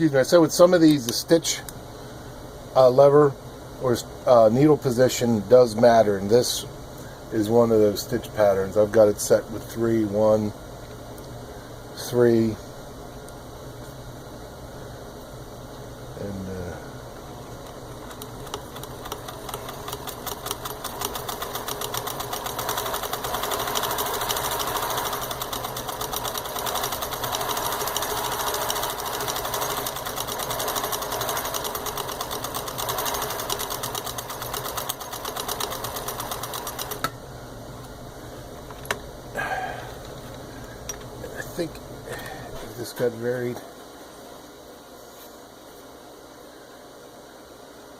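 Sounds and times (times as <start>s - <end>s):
sewing machine stitching: 17.7s - 37.1s.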